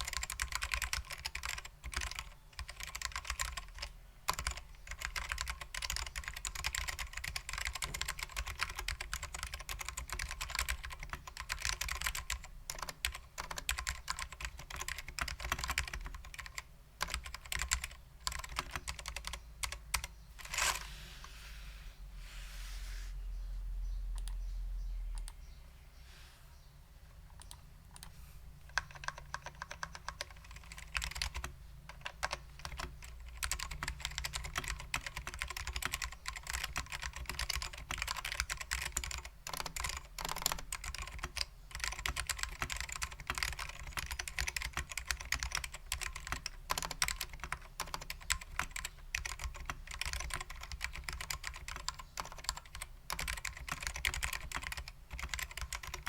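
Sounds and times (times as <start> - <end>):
keyboard typing clicks: 24.2 - 24.4, 25.1 - 25.4, 27.3 - 56.0.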